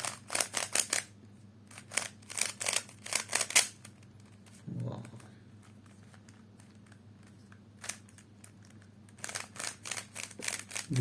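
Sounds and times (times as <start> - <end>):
puzzle cube plastic clicks: 0.0 - 1.1, 1.7 - 4.0, 5.8 - 10.9.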